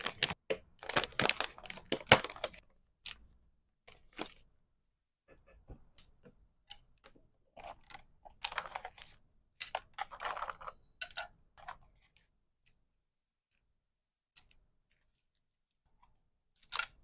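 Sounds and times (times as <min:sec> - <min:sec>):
packaging rustling: 0:00.0 - 0:03.2.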